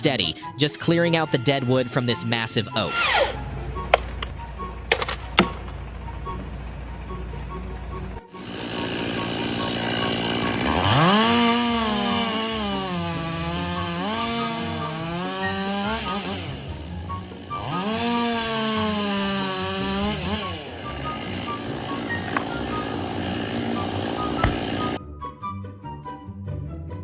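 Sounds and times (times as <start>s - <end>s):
chainsaw cutting wood: 0.7s - 4.3s, 8.3s - 25.0s.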